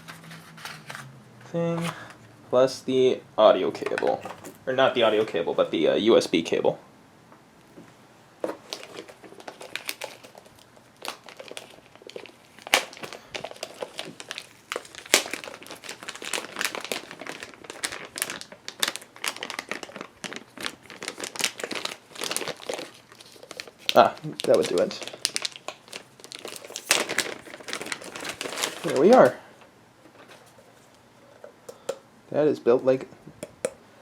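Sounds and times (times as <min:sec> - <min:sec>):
plastic tearing: 0:00.0 - 0:01.1, 0:08.4 - 0:29.4
plastic packaging crinkling: 0:00.0 - 0:01.2, 0:03.7 - 0:05.5, 0:08.4 - 0:29.5.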